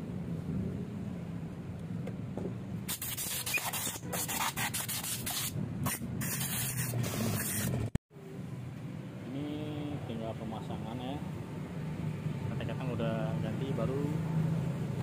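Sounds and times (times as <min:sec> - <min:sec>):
hissing spray bursts: 0:02.9 - 0:07.9.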